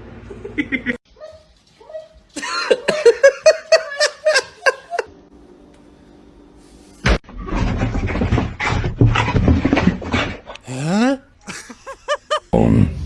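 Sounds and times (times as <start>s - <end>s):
person laughing: 0.3s - 1.0s, 2.4s - 5.1s, 10.8s - 12.7s
rough rustling and clattering: 7.0s - 10.6s.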